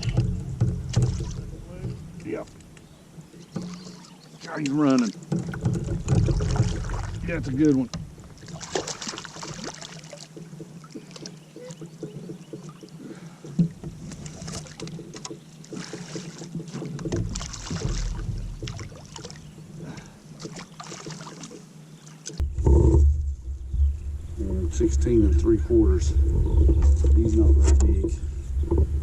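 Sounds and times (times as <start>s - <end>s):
knocks and rattles: 0.0s - 2.6s, 4.9s - 8.2s, 13.4s - 19.0s, 22.4s - 29.0s
water splashing around kayak: 0.0s - 29.0s.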